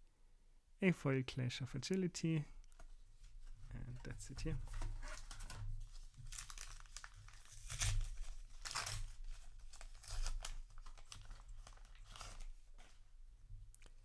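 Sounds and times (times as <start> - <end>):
wrapper tearing and crinkling: 4.7 - 13.0.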